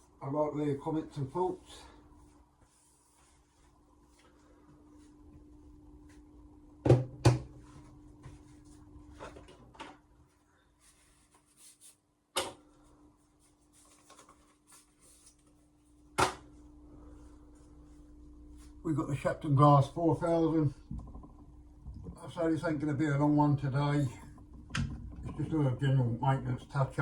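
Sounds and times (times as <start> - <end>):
faint steady hum: 0.0 - 27.0
hard objects knocking on workbench: 6.8 - 7.5.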